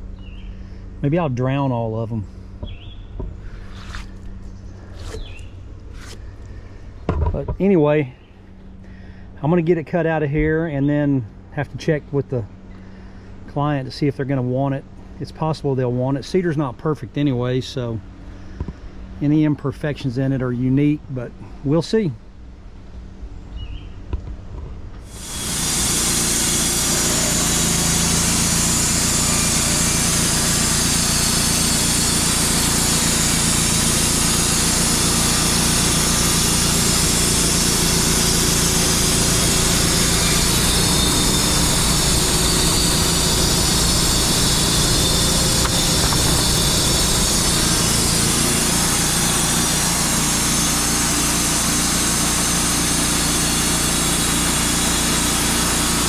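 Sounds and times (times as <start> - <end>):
band sawmill sawing log: 3.4 - 4.2, 25.0 - 56.0.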